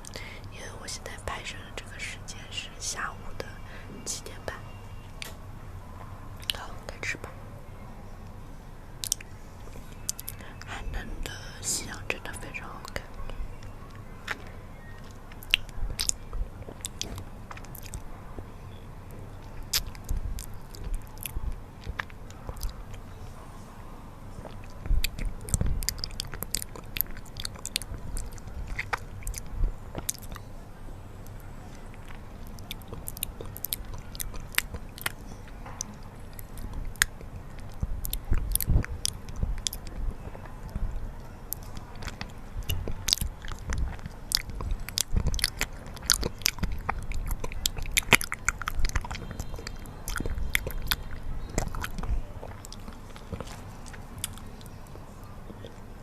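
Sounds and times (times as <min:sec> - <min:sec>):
close chewing: 0:09.0 - 0:11.0, 0:11.8 - 0:18.8, 0:19.4 - 0:23.2, 0:24.3 - 0:30.6, 0:31.2 - 0:55.9
mouth clicks: 0:09.0 - 0:18.1, 0:19.4 - 0:23.1, 0:24.4 - 0:30.5, 0:31.2 - 0:55.8.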